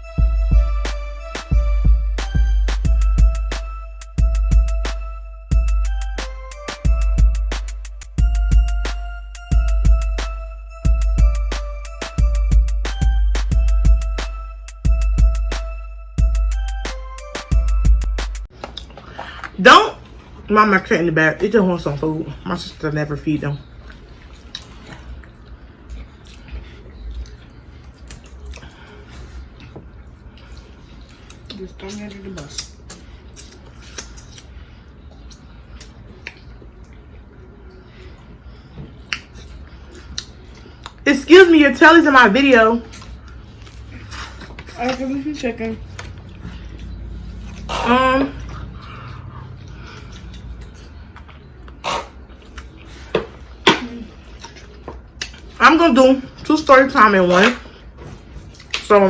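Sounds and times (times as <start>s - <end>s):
smacking and crunching eating: 18.5s - 20.5s, 23.6s - 41.0s, 42.8s - 45.1s, 45.9s - 55.6s, 57.5s - 58.9s
wet chewing and squishing: 18.6s - 19.4s, 23.6s - 41.0s, 42.8s - 45.2s, 45.8s - 47.8s, 48.4s - 55.6s, 57.9s - 59.0s.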